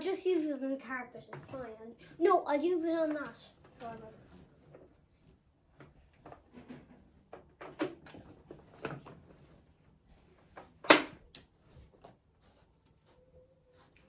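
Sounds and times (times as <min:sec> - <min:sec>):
plastic tools knocking and clattering: 0:06.2 - 0:09.3.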